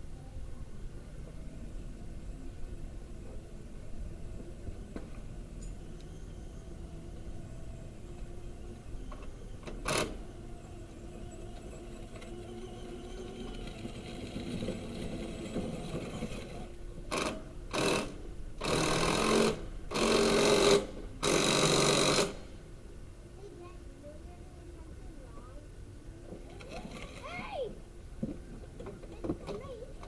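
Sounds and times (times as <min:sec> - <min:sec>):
power tool bursts: 0:17.2 - 0:22.6.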